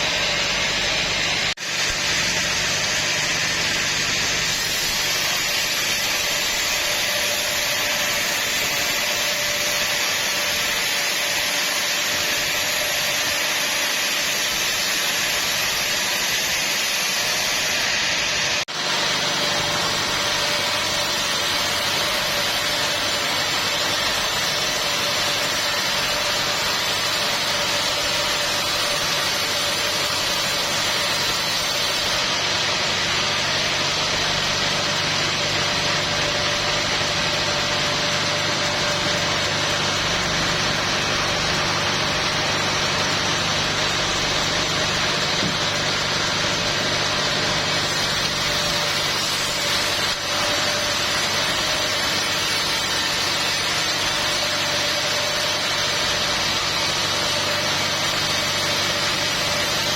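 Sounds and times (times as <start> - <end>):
sawmill machinery hissing: 0.0 - 59.9.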